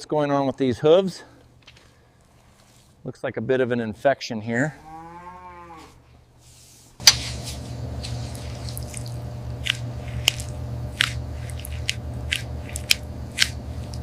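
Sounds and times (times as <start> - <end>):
steady low hum: 6.9 - 14.0
hoof horn being cut: 7.0 - 14.0.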